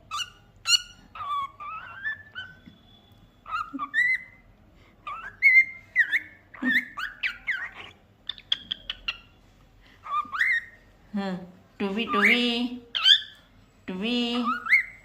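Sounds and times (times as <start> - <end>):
cockatiel whistling: 0.1 - 4.4, 5.1 - 9.3, 10.0 - 10.8.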